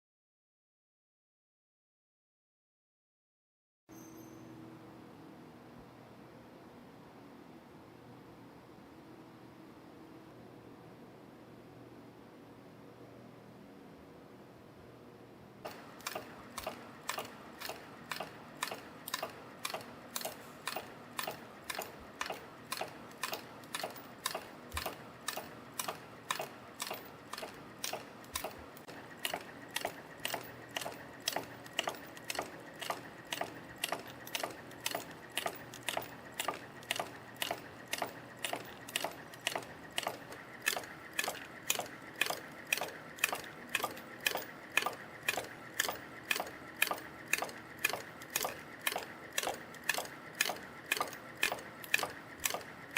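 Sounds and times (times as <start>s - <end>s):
machine whirring: 15.6s - 52.9s
sharp metallic clacks: 15.7s - 52.8s.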